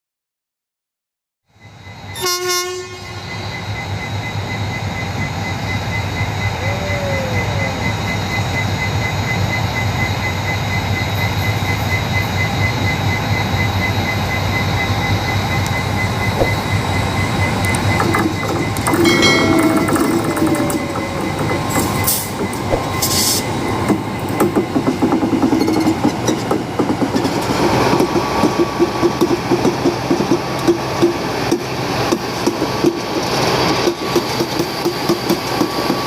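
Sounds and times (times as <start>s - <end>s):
passing train on track: 1.6s - 36.0s
train horn: 2.2s - 3.5s.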